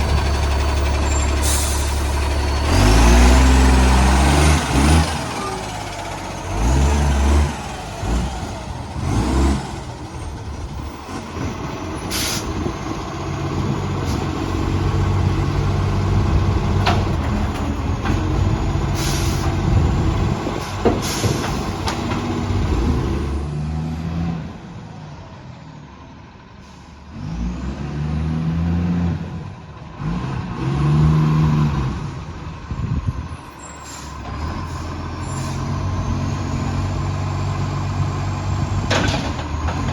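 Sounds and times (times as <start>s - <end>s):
diesel truck engine revving: 0.0s - 25.3s, 26.5s - 39.9s
air brake hisses: 1.4s - 2.1s, 12.1s - 12.6s, 19.0s - 19.6s, 21.0s - 21.6s.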